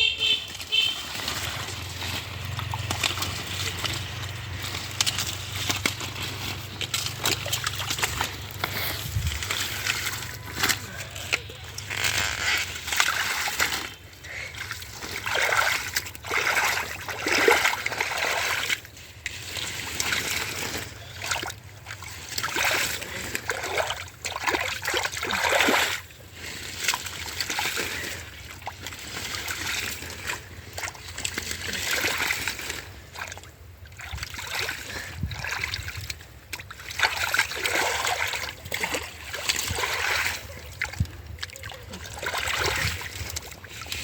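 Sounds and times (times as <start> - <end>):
water splashing and sloshing: 0.0 - 44.0.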